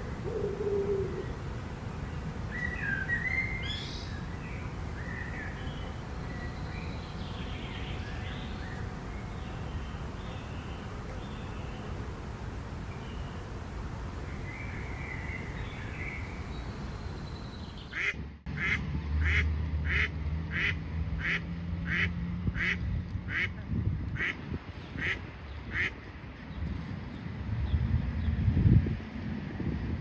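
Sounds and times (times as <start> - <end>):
faint birdsong: 0.0 - 18.7
duck quacking: 17.9 - 23.6, 25.0 - 25.9.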